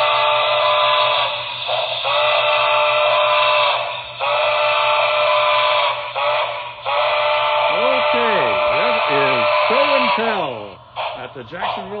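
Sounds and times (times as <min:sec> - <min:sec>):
steam locomotive whistle: 0:00.0 - 0:11.1.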